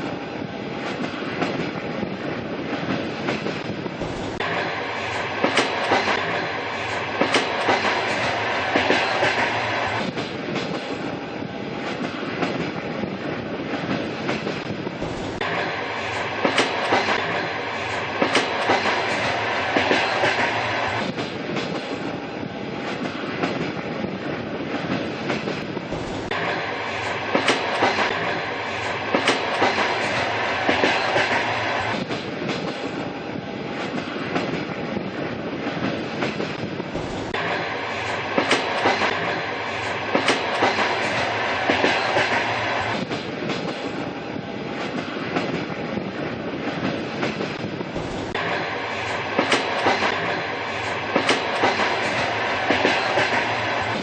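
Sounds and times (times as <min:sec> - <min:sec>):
train rumble and hiss: 0:00.0 - 0:54.0
wheels clacking on rail joints: 0:24.8 - 0:33.0, 0:35.8 - 0:44.1, 0:46.6 - 0:54.0.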